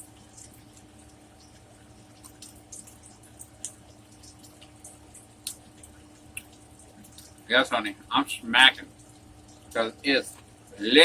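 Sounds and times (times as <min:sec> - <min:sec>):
faint steady hum: 0:00.0 - 0:11.0
chewing and lip-smacking: 0:00.1 - 0:07.4.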